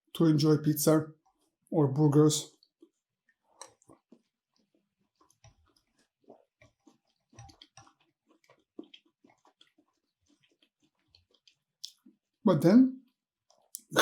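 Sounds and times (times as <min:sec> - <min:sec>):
person chewing: 0:01.2 - 0:01.7, 0:02.5 - 0:12.3, 0:13.4 - 0:14.0.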